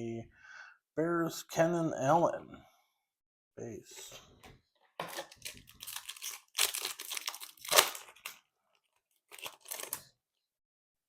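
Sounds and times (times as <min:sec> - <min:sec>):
foil wrapper tearing and crinkling: 0:05.1 - 0:08.4, 0:09.2 - 0:10.1.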